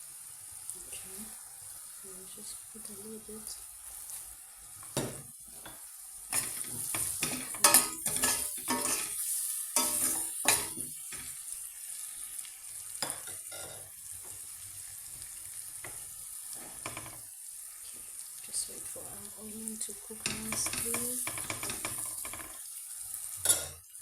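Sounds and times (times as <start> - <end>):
onions sizzling in a pan: 0.0 - 24.0
utensil scraping a pan: 5.5 - 11.3.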